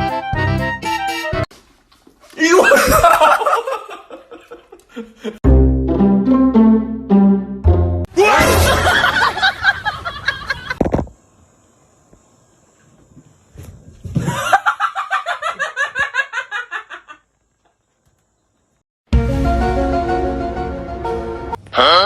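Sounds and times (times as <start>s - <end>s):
person laughing: 2.4s - 5.4s, 8.2s - 10.8s.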